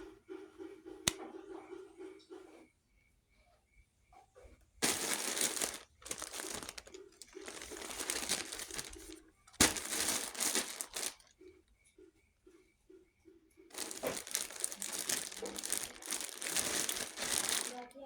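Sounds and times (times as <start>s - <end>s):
crinkling and crumpling: 4.8s - 11.4s, 13.7s - 18.0s.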